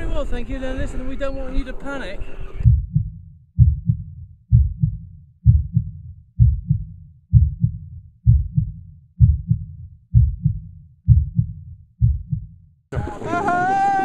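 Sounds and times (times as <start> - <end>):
heartbeat: 2.6 - 12.6.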